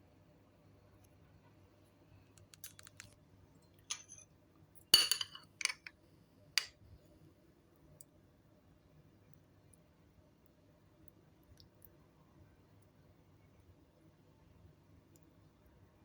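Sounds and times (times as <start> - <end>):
utensil clinking on dish: 3.9 - 4.2, 5.0 - 5.9.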